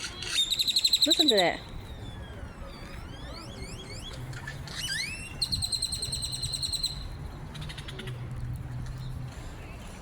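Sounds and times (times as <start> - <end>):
grackles whistling and rattling: 0.0 - 2.2, 2.8 - 8.1.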